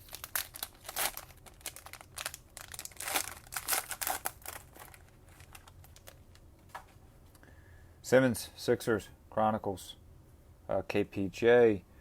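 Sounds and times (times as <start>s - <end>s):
plastic wrapper tearing and crinkling: 0.0s - 6.4s.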